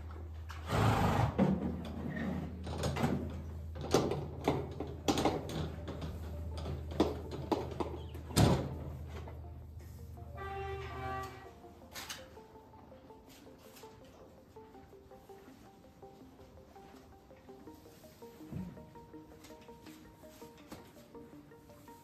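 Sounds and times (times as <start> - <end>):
knocks and clatters: 1.4 - 9.4.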